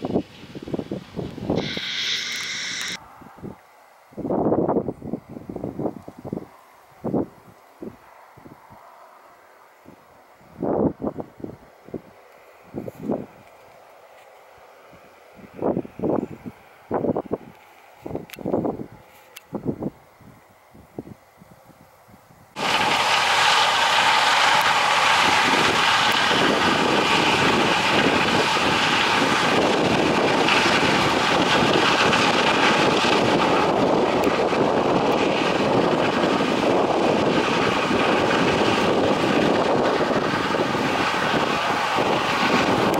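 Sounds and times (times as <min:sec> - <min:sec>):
combine harvester running: 0:00.0 - 0:03.0, 0:22.6 - 0:42.9.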